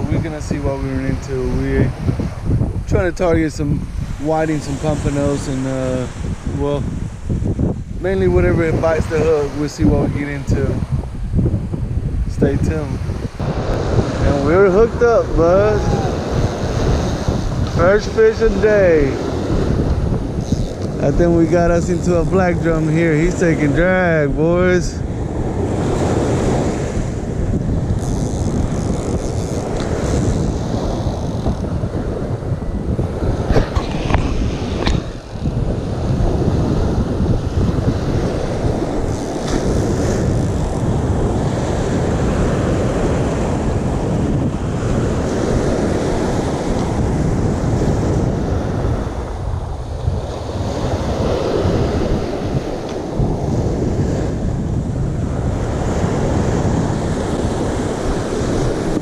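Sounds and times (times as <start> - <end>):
wind buffeting microphone: 0.0 - 59.0
small surf washing on beach: 12.5 - 59.0.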